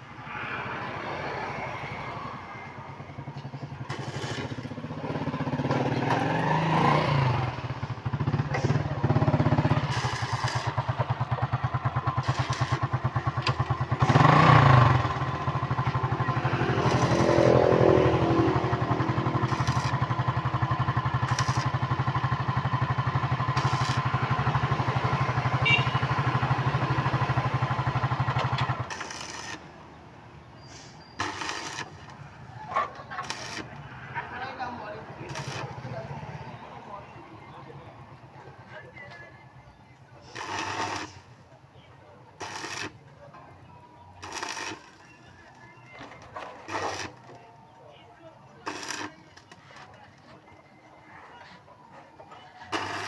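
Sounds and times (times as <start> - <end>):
engine running: 3.1 - 30.2, 31.2 - 36.7.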